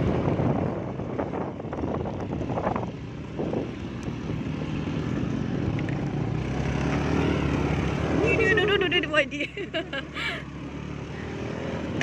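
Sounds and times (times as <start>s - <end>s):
road noise: 0.0s - 12.0s
vehicle engine running: 0.0s - 12.0s.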